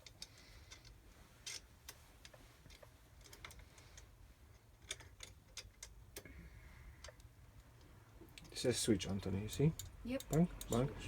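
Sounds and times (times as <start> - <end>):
small metal tools clicking: 2.2 - 6.3, 9.3 - 11.0.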